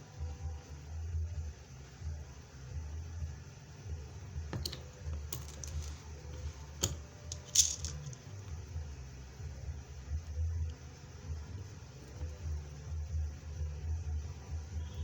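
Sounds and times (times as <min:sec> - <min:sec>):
beads clinking: 0:04.6 - 0:08.4.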